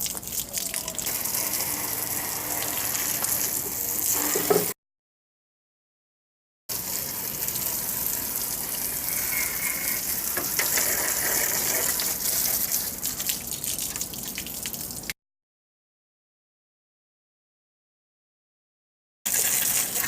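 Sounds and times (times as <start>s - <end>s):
hose water spraying on grille: 0.0s - 4.8s, 6.7s - 14.0s, 19.3s - 20.0s.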